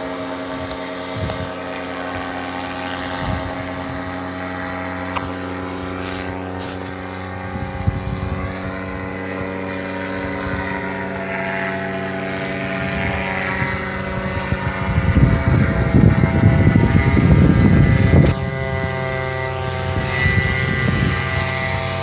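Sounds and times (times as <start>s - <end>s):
propeller engine running: 0.0s - 22.0s
wind gusting on microphone: 0.0s - 22.0s.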